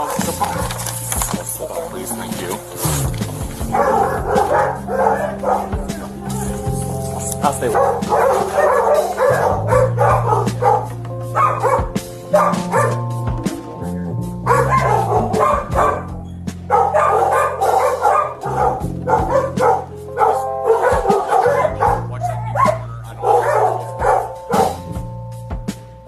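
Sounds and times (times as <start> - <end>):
background music low notes: 0.0 - 26.0
dog barking: 3.3 - 13.1, 14.4 - 24.9.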